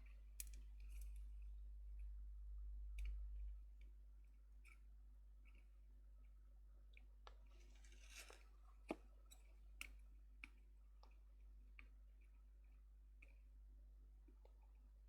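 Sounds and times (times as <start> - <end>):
steady low hum: 0.0 - 5.4.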